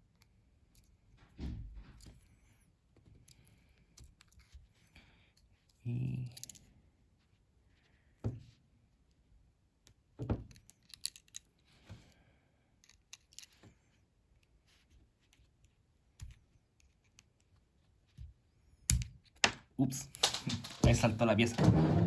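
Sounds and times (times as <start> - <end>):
plastic piece snapping loose: 18.9 - 21.0.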